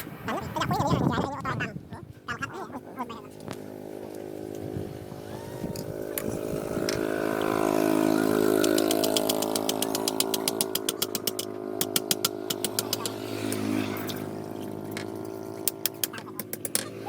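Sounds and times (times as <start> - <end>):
motor-driven machine running: 3.4 - 15.8
rapid sharp knocks: 8.6 - 13.6.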